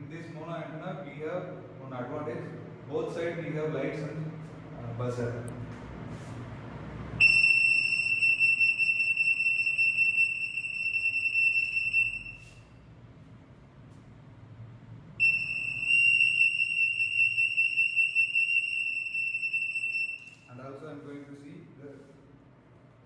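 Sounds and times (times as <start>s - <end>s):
high-pitched alarm buzzer: 7.2s - 12.7s, 15.2s - 20.4s.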